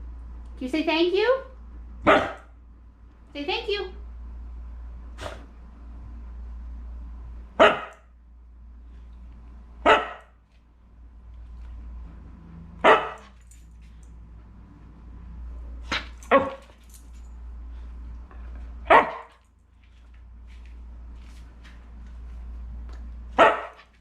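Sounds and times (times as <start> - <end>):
dog barking: 2.0 - 2.5, 7.6 - 8.0, 9.8 - 10.3, 12.8 - 13.4, 15.9 - 16.6, 18.9 - 19.4, 23.4 - 23.8.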